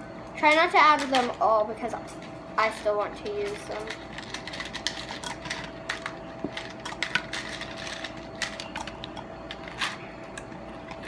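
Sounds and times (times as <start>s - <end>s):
faint steady hum: 0.0s - 11.0s
plastic jewels clicking and rattling: 3.7s - 10.0s.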